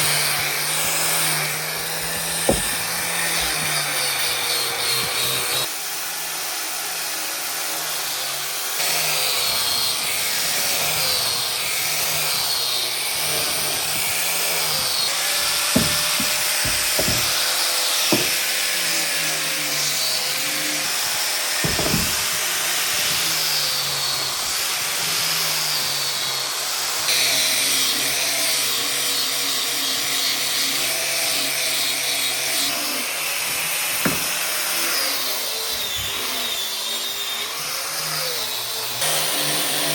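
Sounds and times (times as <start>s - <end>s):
electric power tool on wood: 0.0s - 39.9s
sharp knocks: 1.8s - 3.7s, 15.4s - 17.5s, 18.1s - 18.6s, 21.6s - 22.4s, 34.0s - 34.4s.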